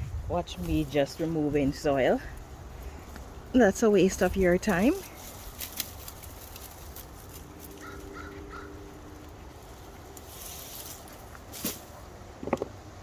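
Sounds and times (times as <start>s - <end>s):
faint clicks and rustles: 4.2s - 8.4s, 9.0s - 12.8s
crow cawing: 7.8s - 8.8s.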